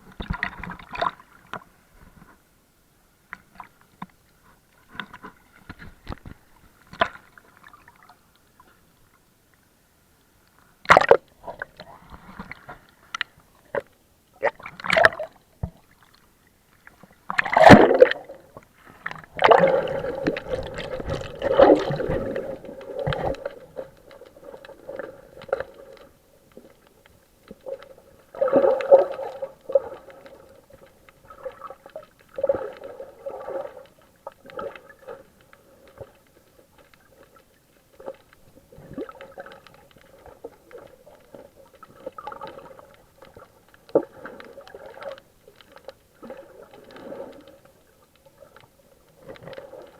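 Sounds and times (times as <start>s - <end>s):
faint steady hum: 0.0s - 49.9s
underwater gurgling and bubbling: 17.3s - 36.2s, 37.0s - 45.3s, 46.2s - 49.9s.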